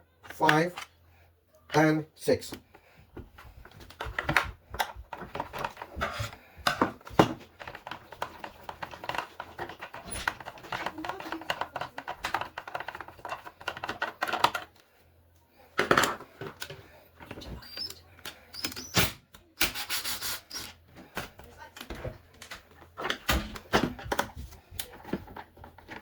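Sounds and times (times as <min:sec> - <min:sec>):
screwdriver clicking on plastic casing: 0:07.6 - 0:14.8.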